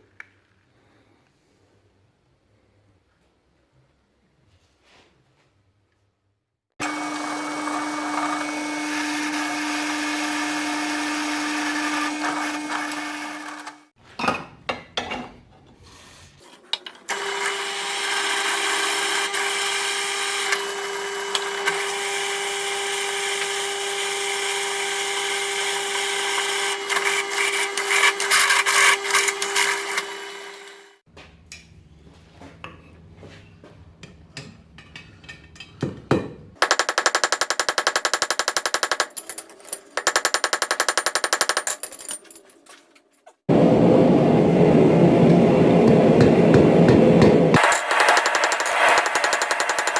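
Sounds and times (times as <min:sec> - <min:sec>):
electric power tool motor: 0:25.2 - 0:31.0.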